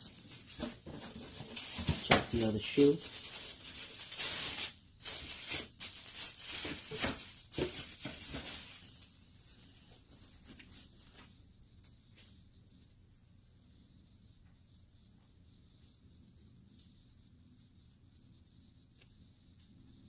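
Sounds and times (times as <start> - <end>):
packing paper crinkling: 0.0 - 11.2.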